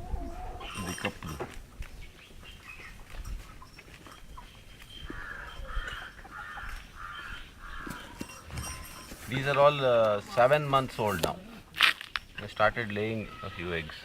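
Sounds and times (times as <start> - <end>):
farmyard background noise: 0.0 - 14.0
bird giving harsh calls: 5.0 - 8.3.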